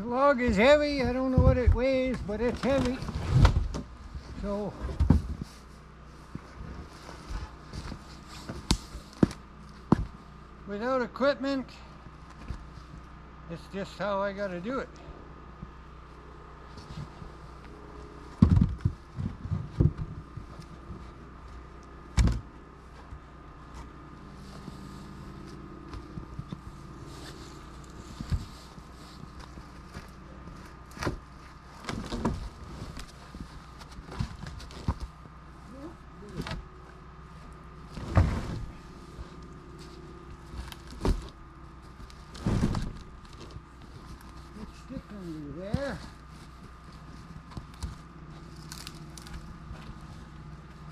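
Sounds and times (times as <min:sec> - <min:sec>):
steady low hum: 0:00.0 - 0:50.9
log thumping and scraping: 0:00.2 - 0:05.7, 0:06.3 - 0:10.3, 0:16.7 - 0:35.4, 0:36.2 - 0:50.9
log knocking and thudding: 0:18.3 - 0:20.6, 0:21.5 - 0:23.2.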